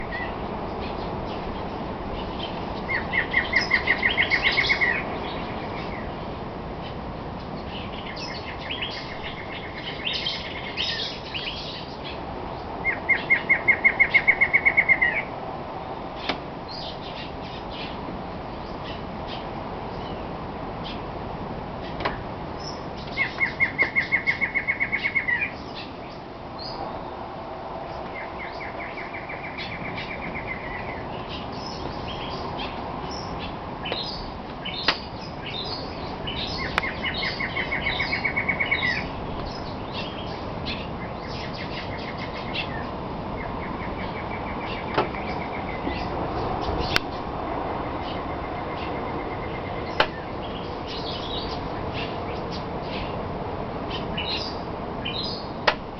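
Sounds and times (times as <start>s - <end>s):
bird trilling: 2.4s - 6.0s, 12.8s - 15.3s, 22.6s - 25.6s, 28.1s - 42.8s.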